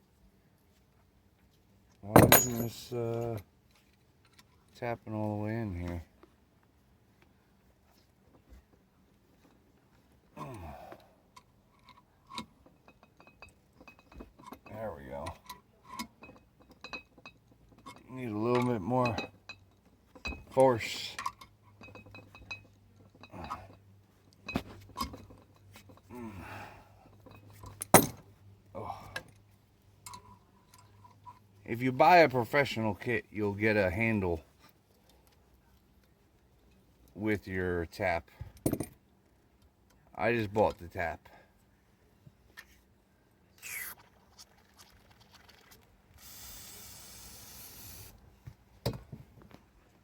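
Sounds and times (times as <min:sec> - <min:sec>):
aerosol can spraying: 0:46.2 - 0:48.1.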